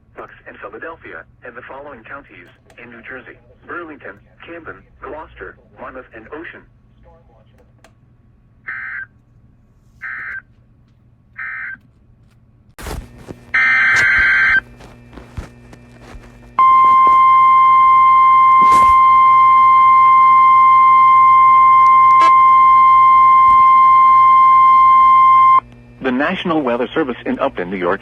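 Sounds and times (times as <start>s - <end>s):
click: 7.6s - 8.0s.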